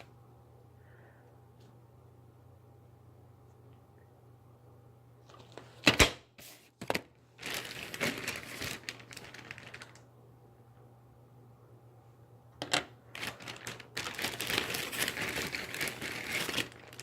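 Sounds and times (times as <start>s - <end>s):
plastic bags crinkling: 6.8s - 10.1s, 12.6s - 17.0s.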